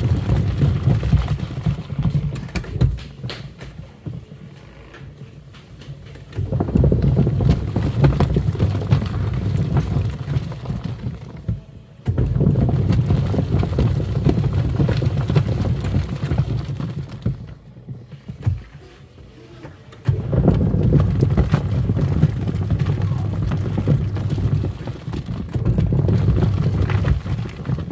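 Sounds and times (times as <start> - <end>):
washing machine motor: 20.1 - 27.9.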